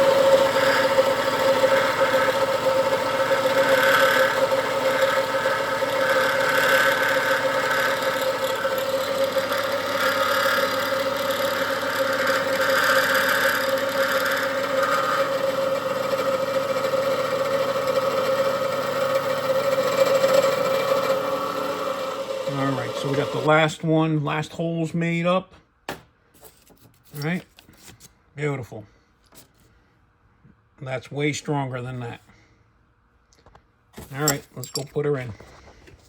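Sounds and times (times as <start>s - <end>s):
drill cutting metal: 0.0s - 23.5s
machine tool humming: 0.0s - 23.5s.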